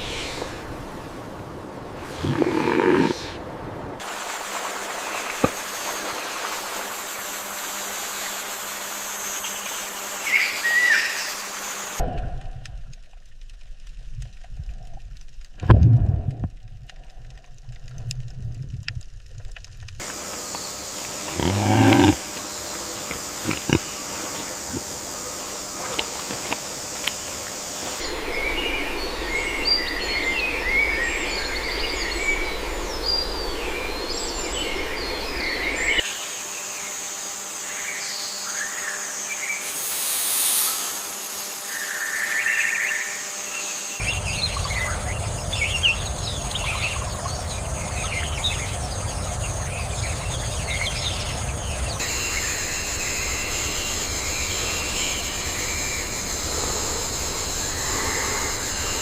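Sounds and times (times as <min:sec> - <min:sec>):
high insect buzz: 0:02.0 - 0:03.4, 0:04.1 - 0:12.0, 0:20.0 - 0:59.0
small birds chirping: 0:20.4 - 0:25.0.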